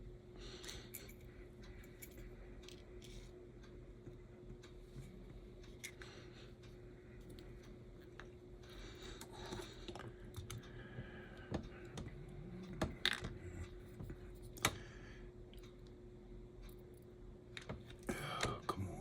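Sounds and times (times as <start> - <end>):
small parts clicking and tapping: 11.4 - 14.8.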